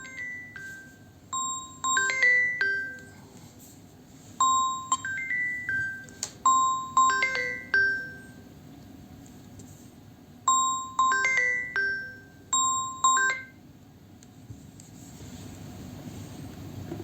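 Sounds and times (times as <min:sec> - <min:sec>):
phone ringtone chiming melody: 0:00.0 - 0:03.2, 0:04.4 - 0:08.4, 0:10.5 - 0:13.6.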